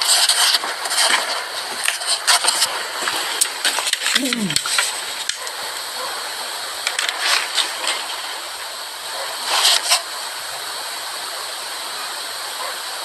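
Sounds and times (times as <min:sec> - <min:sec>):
crackling rustles: 0:00.0 - 0:05.9
steady hiss: 0:00.0 - 0:13.0.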